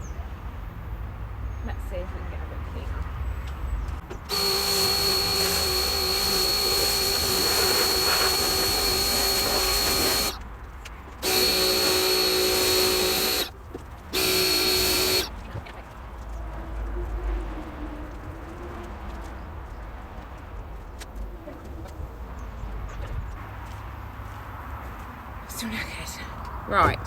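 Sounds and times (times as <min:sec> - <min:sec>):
pressure washer whine and spray: 0:04.2 - 0:10.4, 0:11.2 - 0:13.5, 0:14.1 - 0:15.3.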